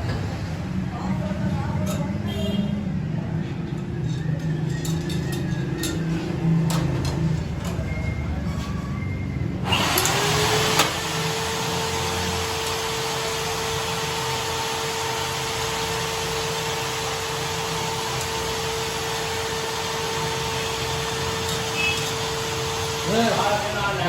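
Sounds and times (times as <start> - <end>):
lathe motor starting up: 9.6 - 23.8.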